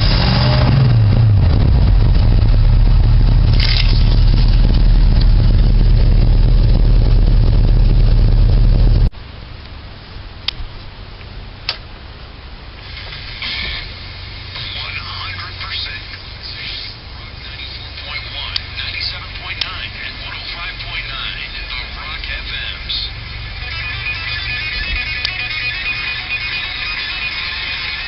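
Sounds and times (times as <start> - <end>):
car engine running: 0.0 - 28.0
sharp clicks: 25.2 - 25.4.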